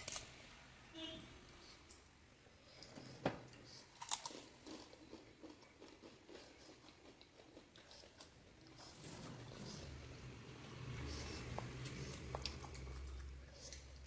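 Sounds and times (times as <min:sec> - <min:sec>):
crackly chewing: 0:01.6 - 0:09.2, 0:11.0 - 0:14.0.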